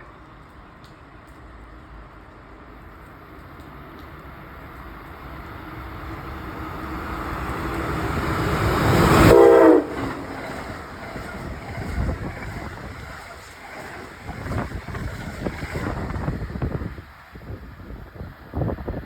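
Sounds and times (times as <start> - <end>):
rush of passing train: 0.0 - 19.0
train rumble: 0.0 - 19.0
wind noise: 6.2 - 19.0
locomotive horn blast: 8.9 - 10.8.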